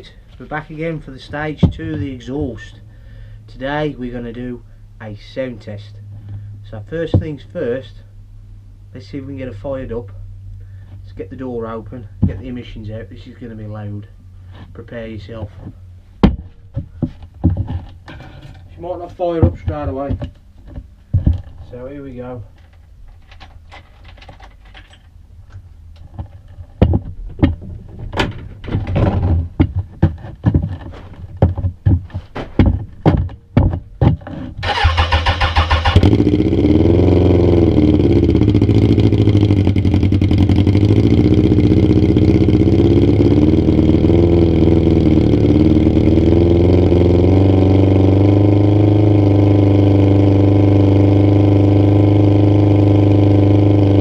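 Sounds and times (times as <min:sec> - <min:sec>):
motorcycle engine cranking and popping: 0:14.6 - 0:54.0
motorcycle engine idling: 0:34.6 - 0:54.0.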